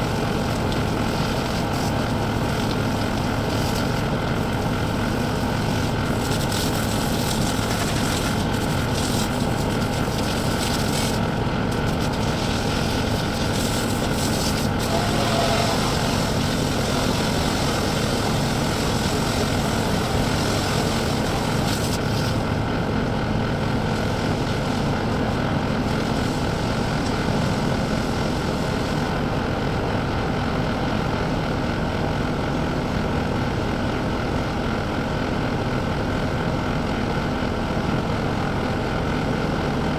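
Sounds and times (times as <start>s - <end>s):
loader engine running: 0.0s - 39.9s.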